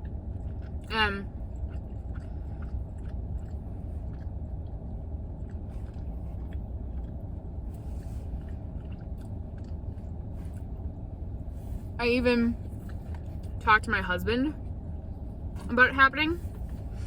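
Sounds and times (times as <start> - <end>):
person chewing close to microphone: 0.0 - 12.0, 12.6 - 13.7
car interior rumble: 0.0 - 17.0.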